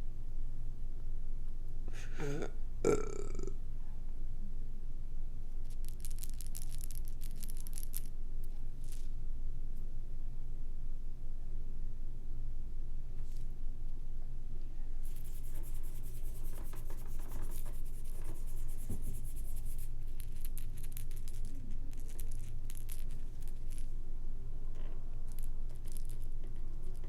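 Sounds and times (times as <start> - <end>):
steady low hum: 0.0 - 27.0
crackling clicks and rustles: 5.6 - 9.2, 15.0 - 24.0, 24.7 - 27.0.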